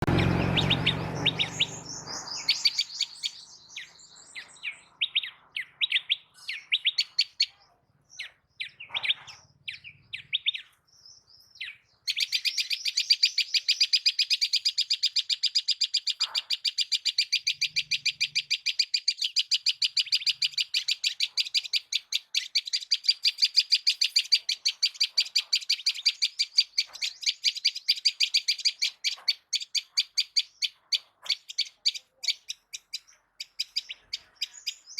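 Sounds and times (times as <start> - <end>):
small birds chirping: 0.0 - 34.9.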